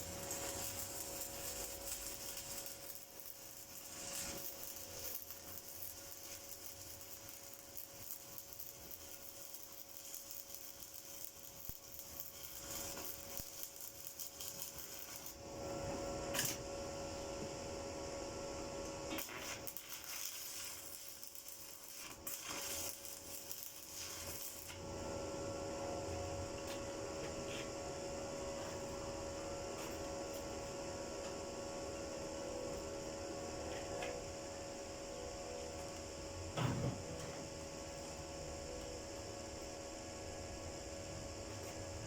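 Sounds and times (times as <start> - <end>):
welding arc crackling: 0.0 - 16.6, 19.1 - 25.1
steady hum: 0.0 - 42.0.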